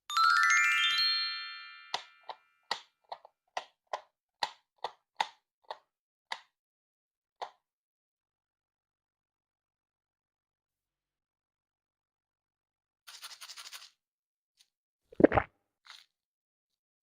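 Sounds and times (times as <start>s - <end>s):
bright upward sweeping chime: 0.1s - 2.2s
water drop plops: 15.2s - 15.5s.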